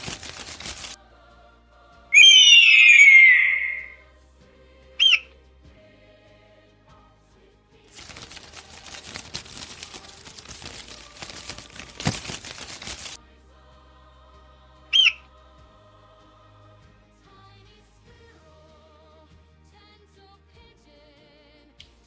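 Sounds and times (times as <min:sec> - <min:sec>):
noisy rush with crackles: 0:00.0 - 0:01.0, 0:07.9 - 0:13.2
whistled bird cry: 0:02.2 - 0:04.0, 0:05.0 - 0:05.2, 0:15.0 - 0:15.2
faint background music: 0:03.9 - 0:22.0.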